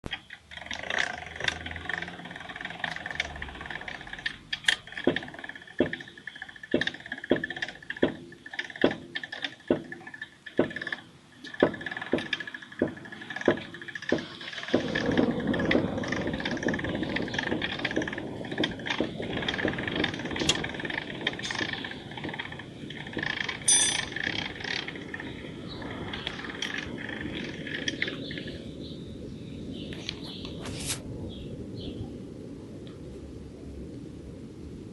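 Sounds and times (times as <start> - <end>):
steady rumbling noise: 0.0 - 34.9
car suspension squeaking: 0.6 - 25.4.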